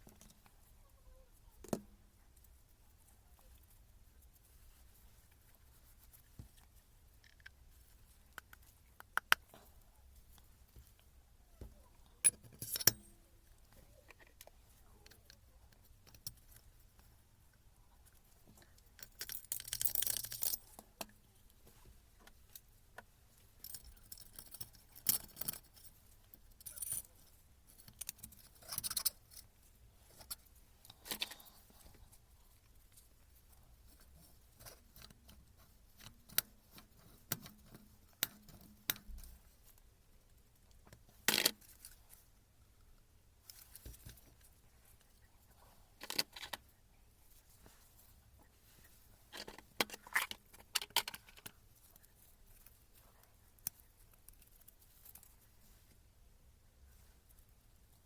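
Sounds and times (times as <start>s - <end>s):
small metal parts clinking: 12.2s - 13.2s, 19.0s - 20.8s, 23.6s - 29.5s.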